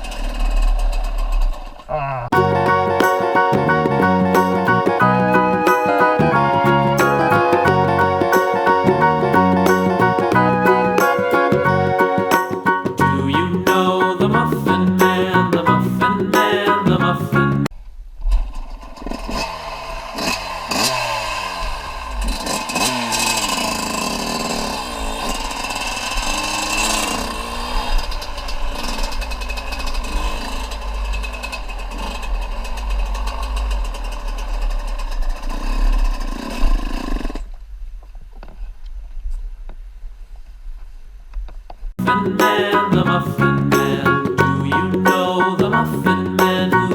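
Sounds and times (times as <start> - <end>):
small engine revving hard: 18.8 - 37.5.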